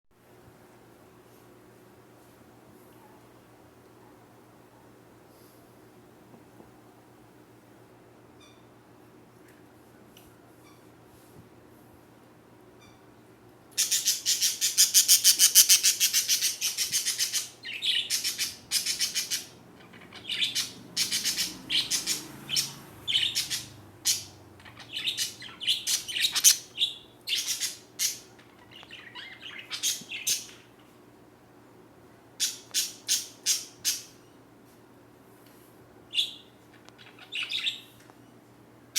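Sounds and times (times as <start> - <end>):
songbird trilling and chirping: 13.8 - 30.6.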